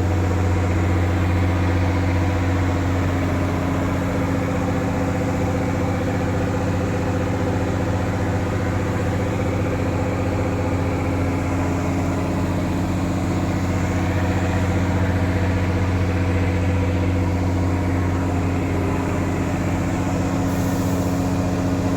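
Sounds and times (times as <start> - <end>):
boat engine running: 0.0 - 21.9.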